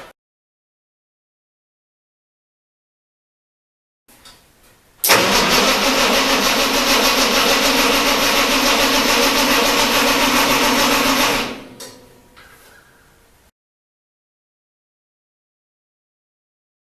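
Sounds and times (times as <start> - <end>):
tractor engine running: 5.1 - 11.9.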